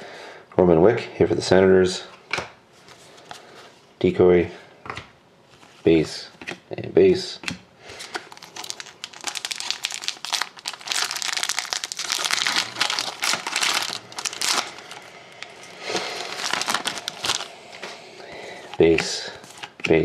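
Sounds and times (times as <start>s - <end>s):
wrapper tearing and crinkling: 8.0s - 17.6s.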